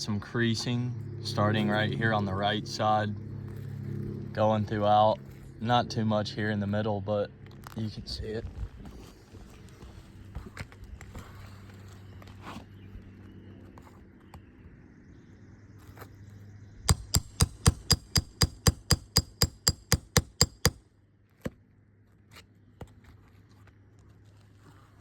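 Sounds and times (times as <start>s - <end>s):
hammer striking metal: 16.9s - 20.8s.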